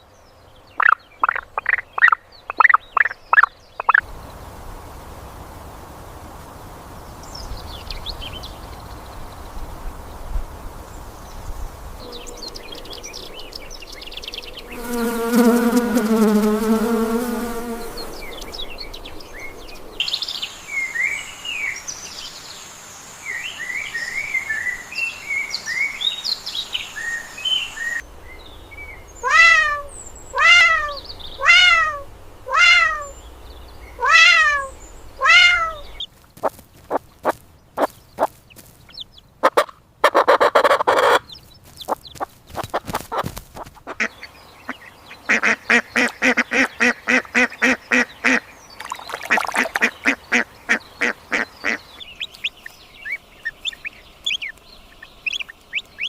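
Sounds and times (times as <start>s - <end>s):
bird-like chirps: 0.0s - 4.0s, 11.2s - 22.6s, 40.9s - 56.0s
falling animal calls: 29.2s - 33.2s, 33.9s - 36.1s
wavering animal call: 29.2s - 33.2s, 34.0s - 36.0s.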